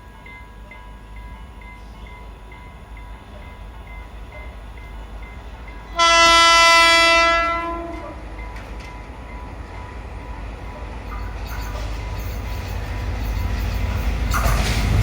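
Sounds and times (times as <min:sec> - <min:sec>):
train running rumble: 0:00.0 - 0:15.0
train horn blast: 0:05.9 - 0:08.2.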